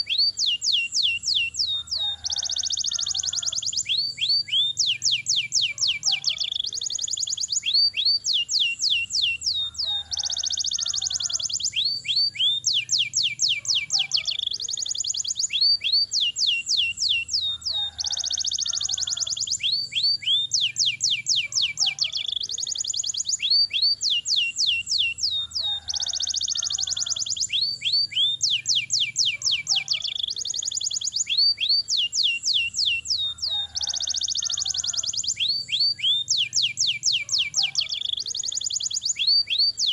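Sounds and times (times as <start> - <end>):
canary singing: 0.0 - 39.9.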